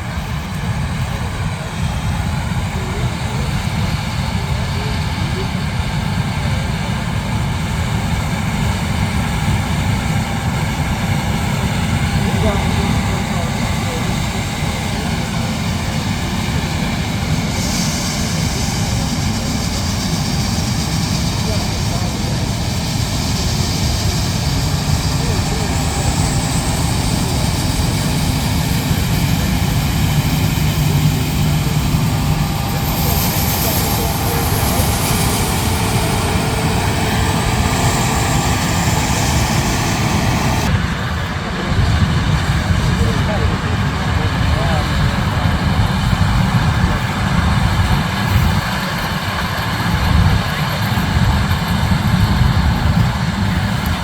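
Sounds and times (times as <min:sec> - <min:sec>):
harvesting machinery rumbling: 0:10.0 - 0:54.0
high hiss: 0:16.8 - 0:40.7.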